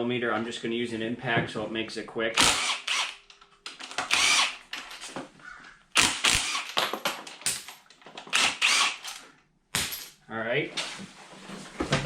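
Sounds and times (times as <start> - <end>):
cordless impact driver running: 2.4 - 3.2, 4.0 - 4.6, 6.0 - 6.8, 8.3 - 9.2.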